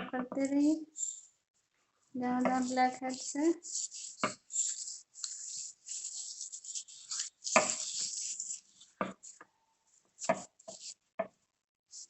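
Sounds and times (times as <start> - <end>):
gritty scrub rubbed on skin: 2.4 - 9.4, 10.2 - 11.0.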